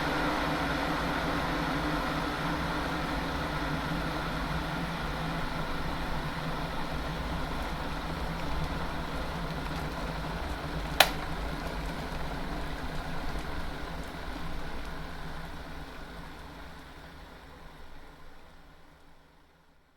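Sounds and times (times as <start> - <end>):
electric kettle boiling: 0.0 - 19.9
kettle switch click: 11.0 - 11.4.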